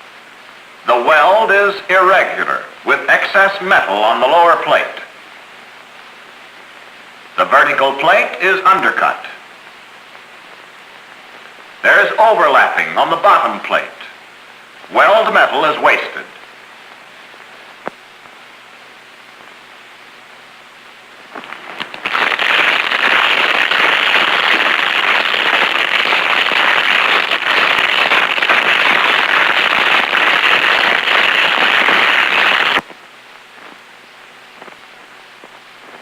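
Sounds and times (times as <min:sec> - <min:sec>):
welding arc crackling: 0:21.0 - 0:36.0.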